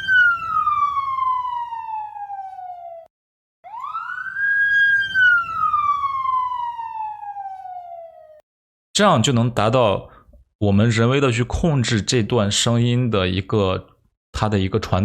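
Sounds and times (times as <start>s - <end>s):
police siren pitch sliding: 0.0s - 8.4s.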